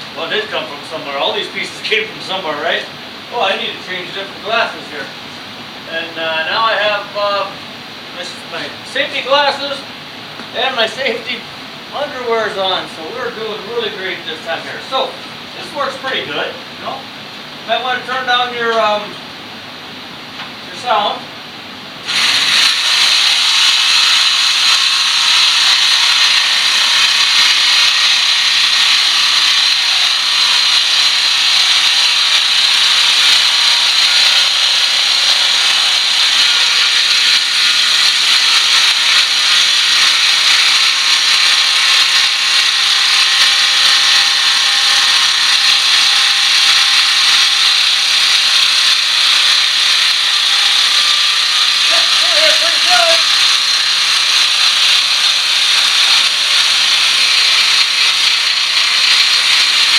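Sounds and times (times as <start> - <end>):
jigsaw cutting sheet metal: 22.0 - 59.9.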